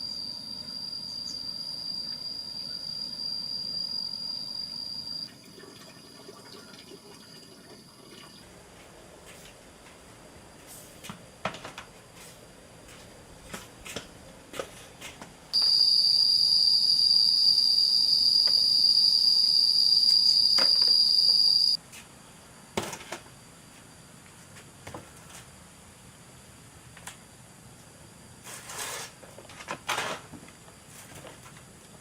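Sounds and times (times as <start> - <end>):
insect buzzing call: 15.6 - 21.8.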